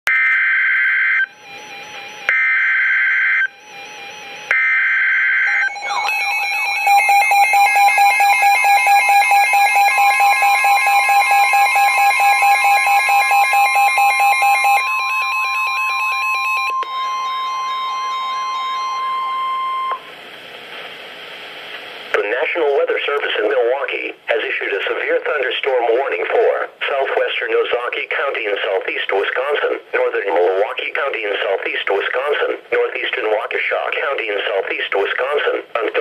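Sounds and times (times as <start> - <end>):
pulsing warbling alarm: 1.2 - 20.0
steady warning tone: 1.2 - 20.1.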